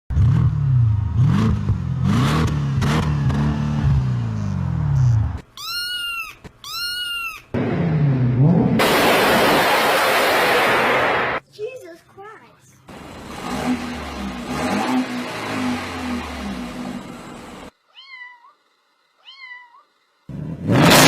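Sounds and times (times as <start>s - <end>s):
car engine revving: 0.1s - 5.4s, 7.6s - 11.4s, 12.9s - 17.7s, 20.3s - 21.0s.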